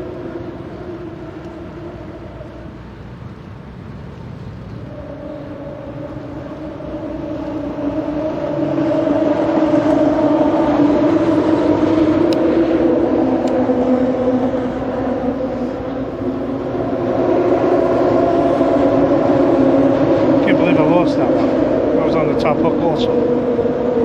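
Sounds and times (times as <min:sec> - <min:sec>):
boat engine running: 0:00.0 - 0:24.0.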